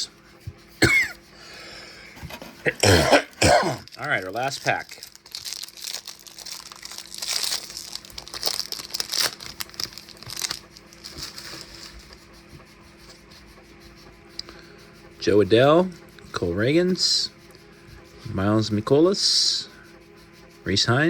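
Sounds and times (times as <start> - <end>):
wrapper crinkling and tearing: 3.2 - 12.1.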